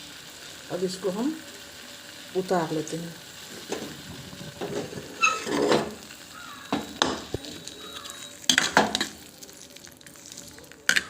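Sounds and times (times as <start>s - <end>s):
metal spoon scraping pan: 4.7s - 6.0s.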